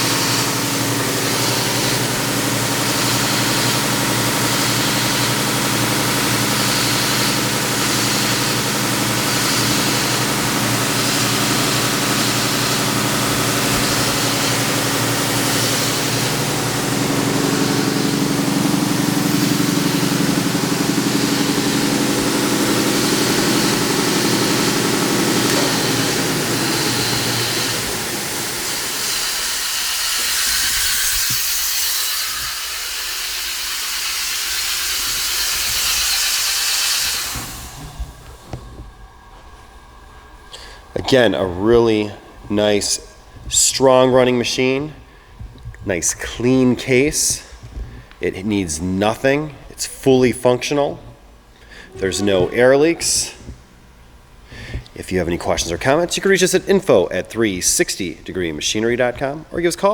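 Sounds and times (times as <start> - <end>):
belt sander running: 0.0 - 58.1.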